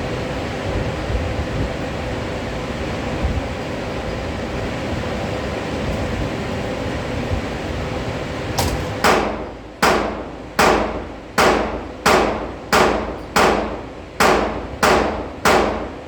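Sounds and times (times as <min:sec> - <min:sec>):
pistol shots: 0:08.6 - 0:16.0.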